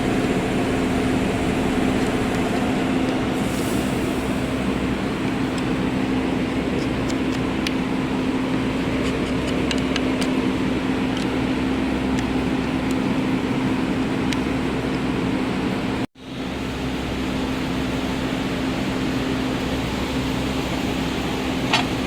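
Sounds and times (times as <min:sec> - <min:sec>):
engine idling with knocking ticks: 0:00.0 - 0:03.4, 0:04.6 - 0:15.1, 0:18.3 - 0:22.0.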